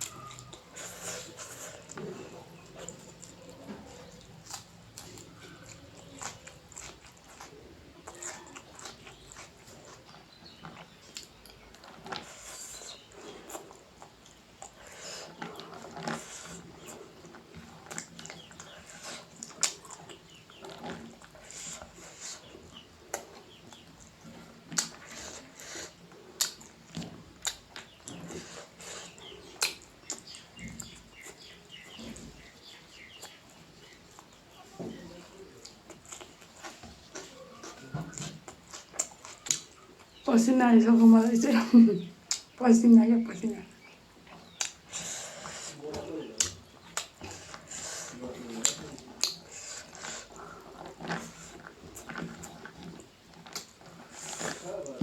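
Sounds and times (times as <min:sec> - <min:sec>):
person chewing food: 0:00.0 - 0:40.3, 0:42.0 - 0:42.6, 0:43.6 - 0:55.0
lip smacks: 0:24.7 - 0:32.0, 0:42.2 - 0:42.6, 0:44.3 - 0:55.0
small mouth clicks: 0:29.6 - 0:31.0, 0:42.3 - 0:42.6, 0:44.5 - 0:44.9, 0:48.6 - 0:51.2.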